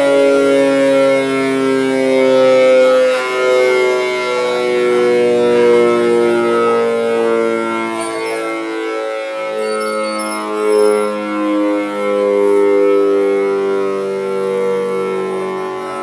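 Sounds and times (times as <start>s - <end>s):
air raid siren: 0.0s - 16.0s.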